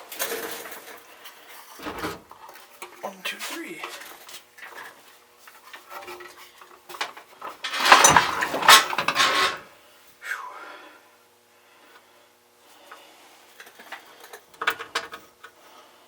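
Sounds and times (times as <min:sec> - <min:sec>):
reel mower clanking and scraping: 0:05.5 - 0:09.7.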